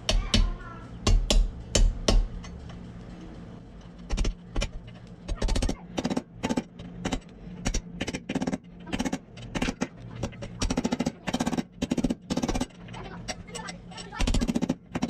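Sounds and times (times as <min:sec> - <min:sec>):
hammer striking metal bearing: 0:00.0 - 0:02.6.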